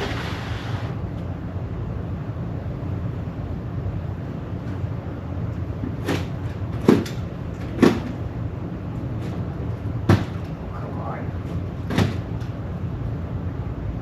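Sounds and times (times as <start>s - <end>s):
steady low rumble: 0.0s - 14.0s
sharp knocks: 5.9s - 8.2s, 10.0s - 10.5s.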